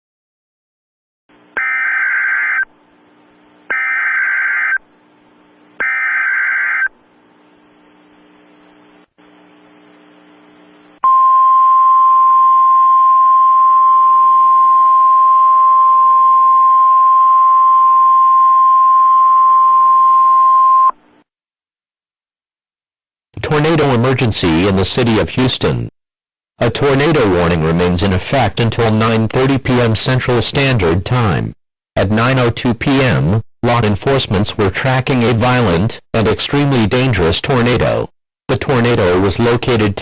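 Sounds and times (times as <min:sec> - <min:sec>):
faint radio hiss: 0:07.0 - 0:11.0.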